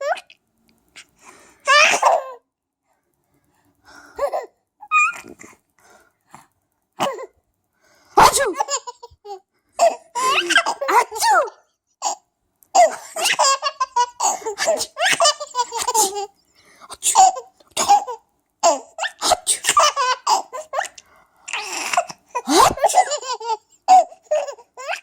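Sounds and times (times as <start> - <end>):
baby giggling: 4.2 - 5.4, 8.2 - 12.2, 12.8 - 16.3, 17.1 - 21.0, 21.6 - 25.0.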